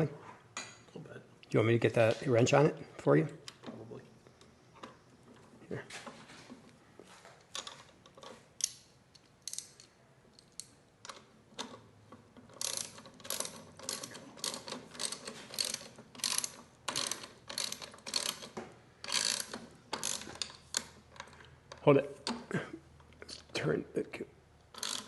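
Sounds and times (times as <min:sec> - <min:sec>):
ratchet wrench clicking: 0:08.6 - 0:09.9, 0:12.5 - 0:21.0, 0:24.7 - 0:25.0.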